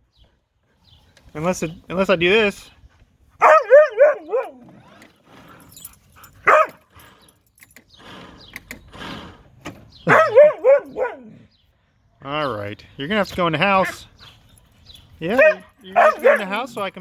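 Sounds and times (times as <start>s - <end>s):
dog yowling: 3.4s - 4.9s, 6.4s - 6.8s, 10.1s - 11.4s, 15.3s - 16.6s.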